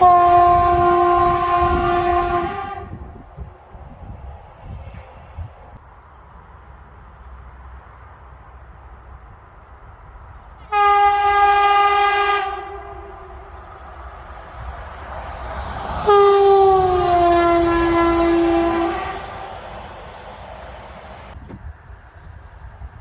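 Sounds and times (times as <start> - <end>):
train air horn blast: 0.0 - 3.3, 10.6 - 13.8, 15.0 - 21.4
train rumbling: 0.0 - 23.0.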